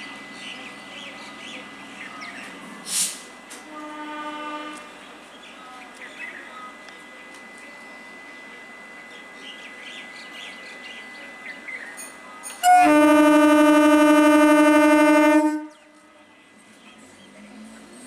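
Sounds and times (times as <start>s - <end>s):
train air horn blast: 3.1s - 5.1s, 12.6s - 16.1s.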